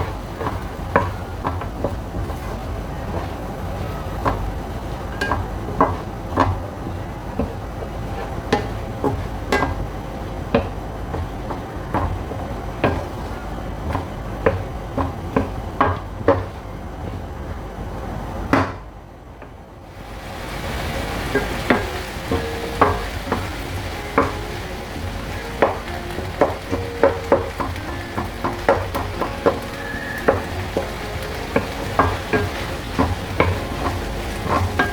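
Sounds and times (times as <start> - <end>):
food sizzling: 19.9 - 34.9
spatula scraping frying pan: 20.4 - 34.9.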